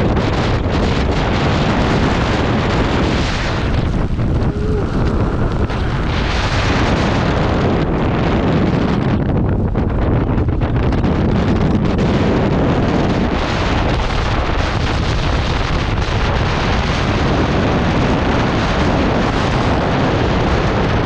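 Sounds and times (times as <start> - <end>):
hurricane wind roaring: 0.0 - 21.0.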